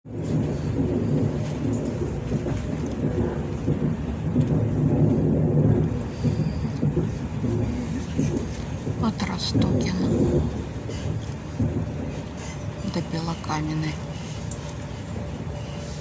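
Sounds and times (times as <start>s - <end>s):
electric train rumbling: 0.0s - 16.0s.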